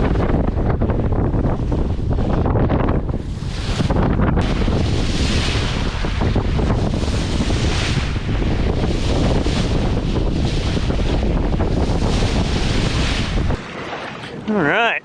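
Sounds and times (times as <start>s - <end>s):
heavy low rumble: 0.0s - 14.8s
wind buffeting microphone: 0.0s - 15.0s
water rushing: 3.7s - 15.0s.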